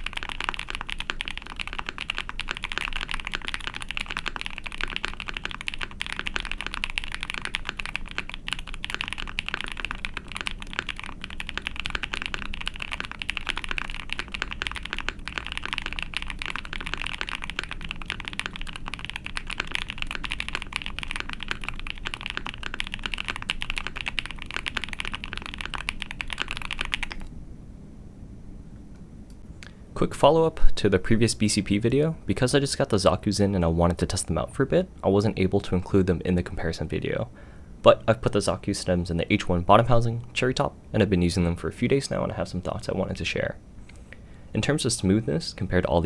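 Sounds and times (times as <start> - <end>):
mechanical keyboard typing: 0.0 - 27.3.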